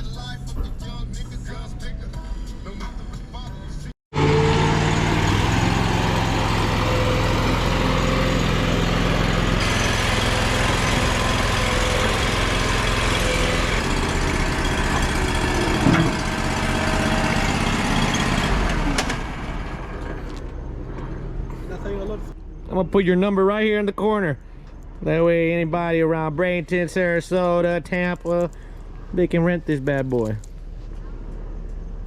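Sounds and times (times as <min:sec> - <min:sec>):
vehicle engine idling: 0:04.2 - 0:22.7.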